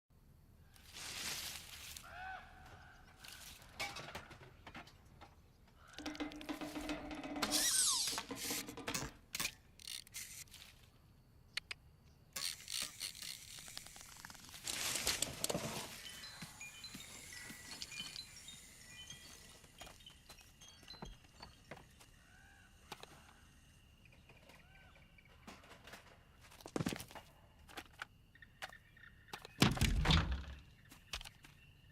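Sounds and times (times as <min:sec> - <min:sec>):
falling sliding tone: 0:07.4 - 0:08.7.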